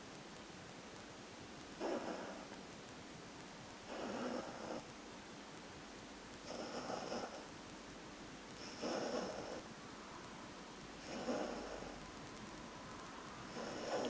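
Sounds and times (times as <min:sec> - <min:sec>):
puppy snoring: 0:01.8 - 0:02.6, 0:03.8 - 0:04.9, 0:06.4 - 0:07.5, 0:08.6 - 0:09.7, 0:11.0 - 0:12.0, 0:13.5 - 0:14.0.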